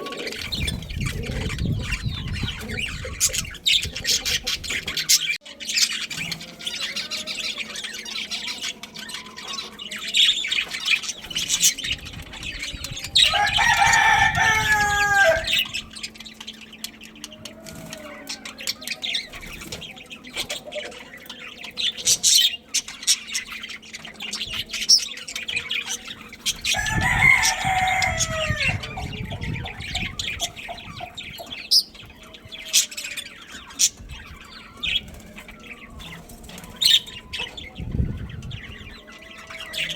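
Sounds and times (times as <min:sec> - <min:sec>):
budgies chirping: 0:00.0 - 0:39.9
rooster crowing: 0:13.2 - 0:15.7, 0:26.6 - 0:30.3.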